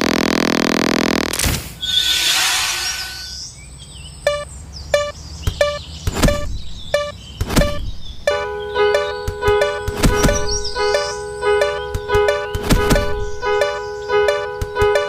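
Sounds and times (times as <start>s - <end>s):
level crossing alarm bell ringing: 4.3s - 6.4s, 7.0s - 7.2s, 8.3s - 15.0s
sharp low knocks: 5.0s - 15.0s.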